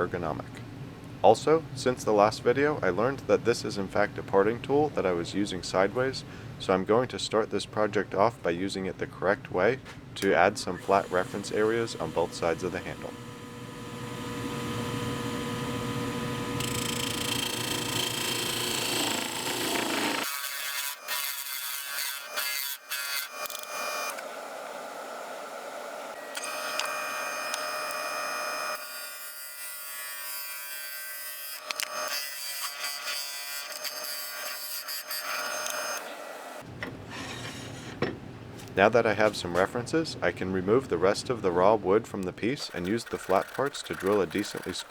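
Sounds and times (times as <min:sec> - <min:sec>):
tool scraping spinning wood: 0:10.7 - 0:14.8, 0:16.4 - 0:20.3, 0:42.6 - 0:44.9
lathe motor whine: 0:10.8 - 0:20.2.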